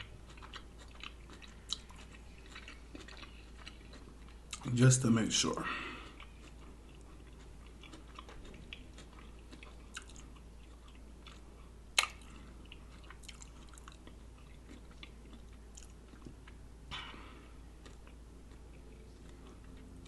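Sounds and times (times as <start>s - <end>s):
chewing sandwich: 0.0s - 4.8s, 5.8s - 20.0s
wet mouth clicks: 12.0s - 12.3s.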